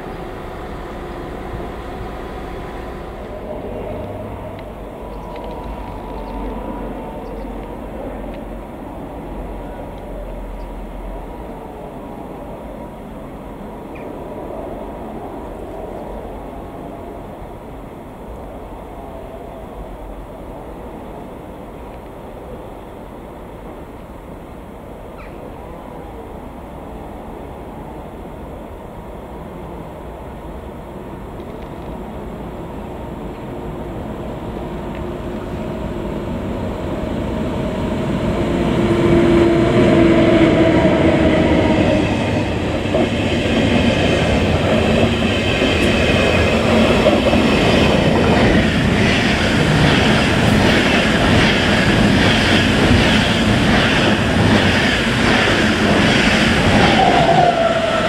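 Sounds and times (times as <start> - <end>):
wheels clickety-clack on rail joints: 0.0 - 11.7, 31.3 - 58.0
train rumbling past: 0.0 - 58.0.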